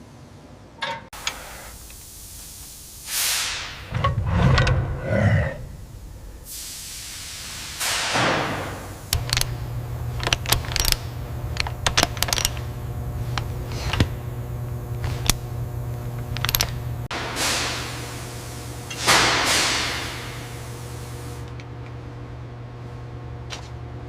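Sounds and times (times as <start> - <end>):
low machine hum: 0.0 - 24.0
sharp metallic clicks and knocks: 9.1 - 12.7.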